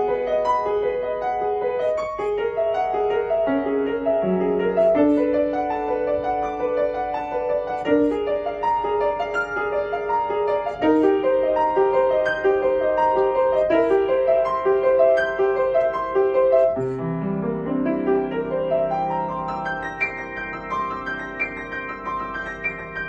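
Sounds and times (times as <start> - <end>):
piano playing: 0.0 - 23.0.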